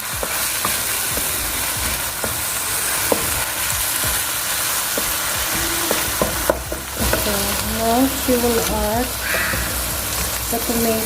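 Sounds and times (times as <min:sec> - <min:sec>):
meat sizzling in oil: 0:00.0 - 0:11.0.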